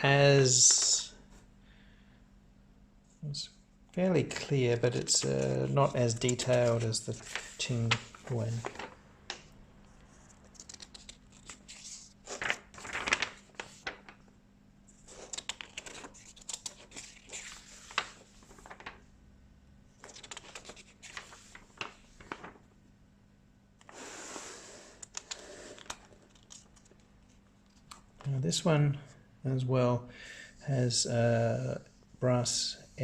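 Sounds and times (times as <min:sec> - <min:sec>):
paper and packaging rustling: 0:04.3 - 0:14.2, 0:15.0 - 0:19.0, 0:20.0 - 0:22.7, 0:25.1 - 0:28.1.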